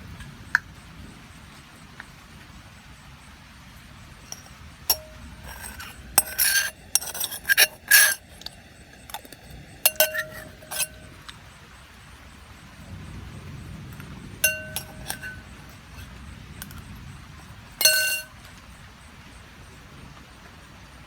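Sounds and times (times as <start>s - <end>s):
hard objects clinking and knocking: 4.3s - 11.2s, 14.4s - 16.8s, 17.8s - 18.3s.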